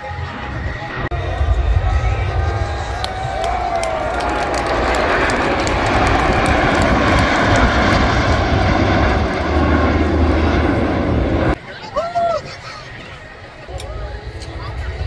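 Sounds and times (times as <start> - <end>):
plane flying past: 0.0 - 11.6.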